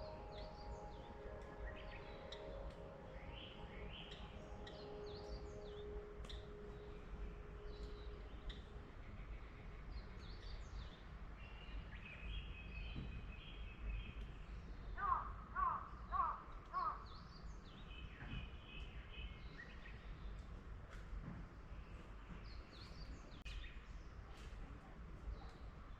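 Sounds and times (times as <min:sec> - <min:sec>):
birds chirping and trilling: 0:00.0 - 0:20.4
crow cawing: 0:15.0 - 0:17.0.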